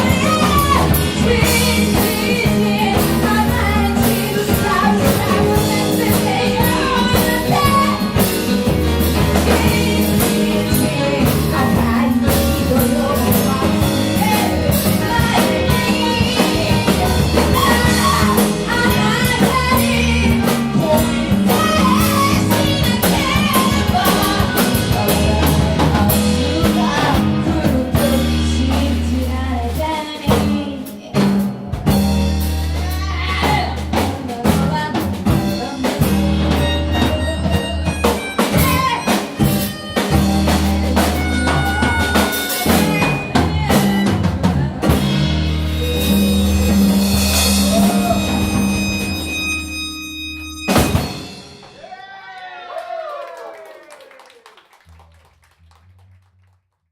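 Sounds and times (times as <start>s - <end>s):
band song with singing: 0.0s - 49.5s.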